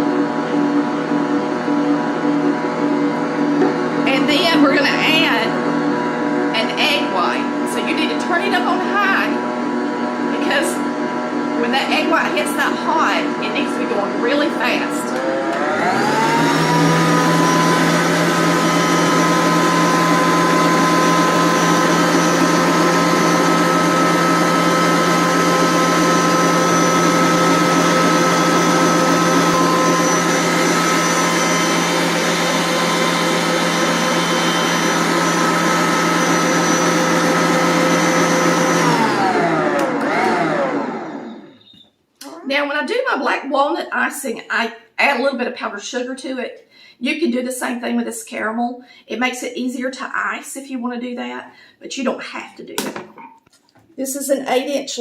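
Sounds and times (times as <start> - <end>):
stand mixer motor running: 0.0 - 8.0, 8.6 - 41.5.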